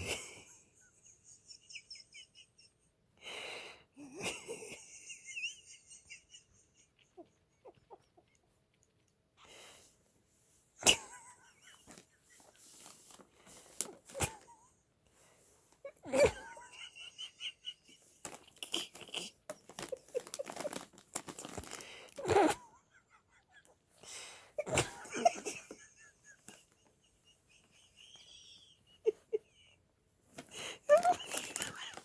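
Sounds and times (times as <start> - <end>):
snack bag crinkling: 18.2 - 22.6, 30.9 - 32.0.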